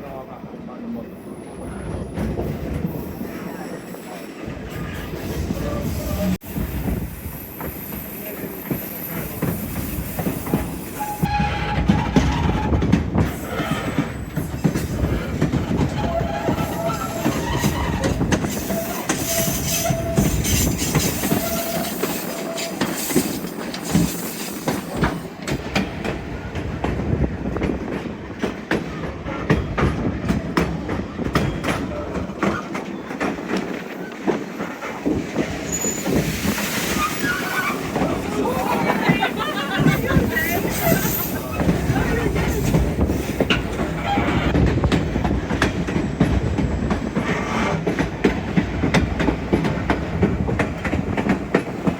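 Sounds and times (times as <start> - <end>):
train wheels clicking over track: 4.8 - 51.9
wheel squeals: 15.8 - 25.2, 35.5 - 44.6.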